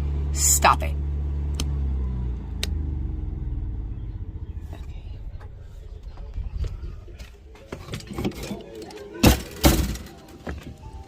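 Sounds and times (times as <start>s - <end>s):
generator winding down: 1.4s - 8.1s.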